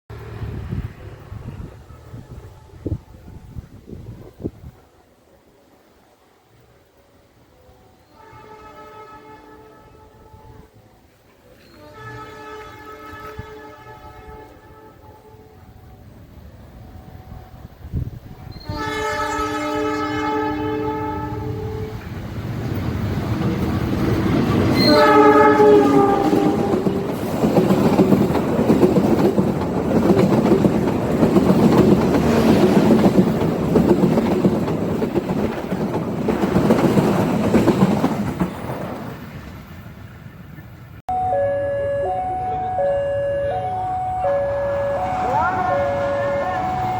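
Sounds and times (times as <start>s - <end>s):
train rumble and wheel clatter: 0.1s - 41.0s, 42.2s - 46.9s
locomotive horn blasts: 8.0s - 10.7s, 11.7s - 15.8s, 18.5s - 22.0s, 24.7s - 27.1s, 41.1s - 46.9s.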